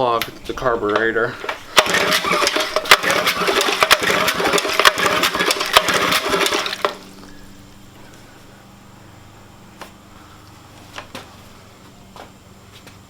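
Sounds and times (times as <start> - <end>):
outboard motor cranked by hand: 0.6 - 7.3.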